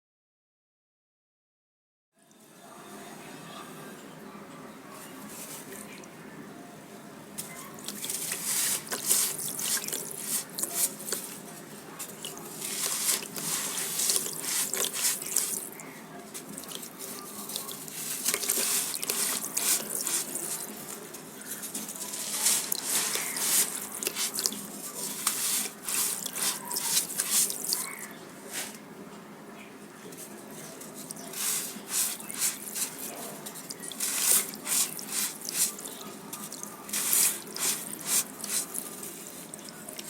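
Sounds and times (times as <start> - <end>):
sand fizzing in water: 7.8 - 15.8, 16.4 - 21.0, 21.7 - 28.0, 31.0 - 40.0.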